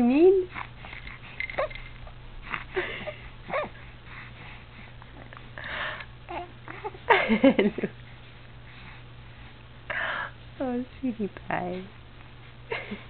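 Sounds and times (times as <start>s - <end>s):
baby cooing and babbling: 6.3s - 7.0s.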